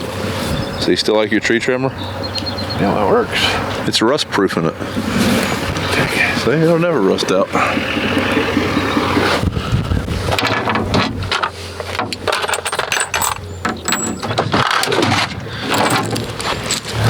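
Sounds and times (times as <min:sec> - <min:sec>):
machine engine humming: 0:04.8 - 0:17.0
metallic clinks and knocks: 0:10.5 - 0:17.0.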